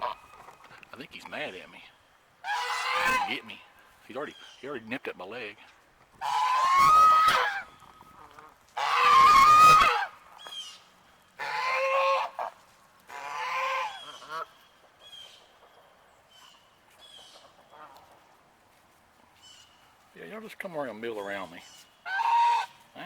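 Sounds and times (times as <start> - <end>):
goose honking: 2.4 - 3.6, 6.2 - 10.2, 11.4 - 14.5, 21.2 - 23.0.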